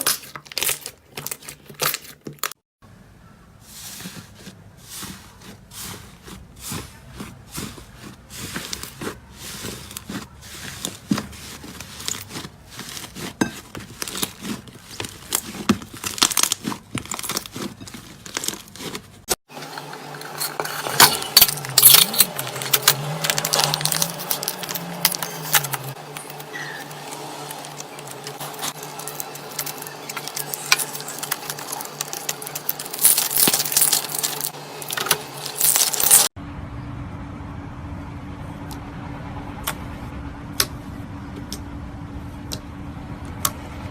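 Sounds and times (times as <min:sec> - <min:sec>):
slime squishing and crackling: 0:03.8 - 0:19.3, 0:21.0 - 0:36.3
low hum: 0:35.6 - 0:43.9.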